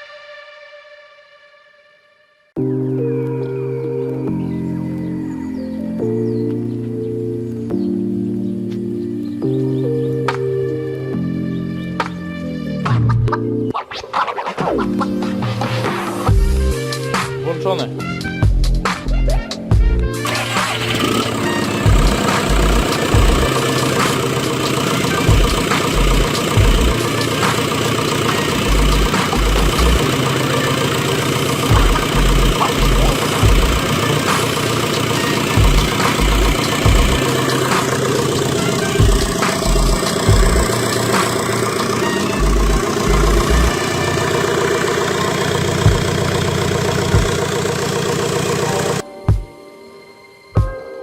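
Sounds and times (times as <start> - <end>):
diesel engine idling: 20.2 - 49.0.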